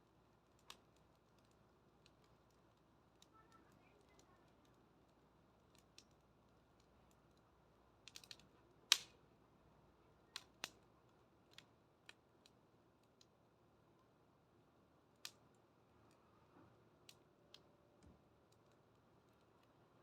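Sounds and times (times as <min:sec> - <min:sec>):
wood fire crackling and popping: 0:00.0 - 0:09.3, 0:10.1 - 0:13.4, 0:15.0 - 0:16.2, 0:16.9 - 0:19.8.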